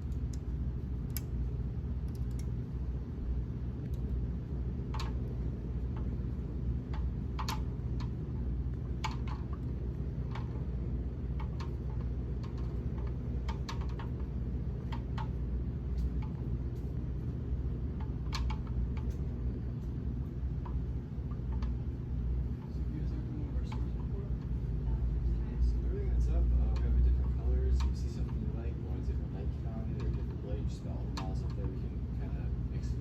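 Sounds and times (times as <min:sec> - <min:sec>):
ceiling fan humming: 0:00.0 - 0:33.0
light clicks: 0:02.0 - 0:02.6.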